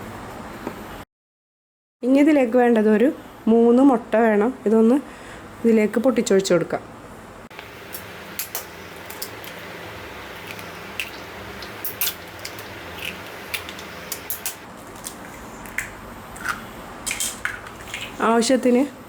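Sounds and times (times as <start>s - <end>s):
steady low hum: 6.9s - 18.2s.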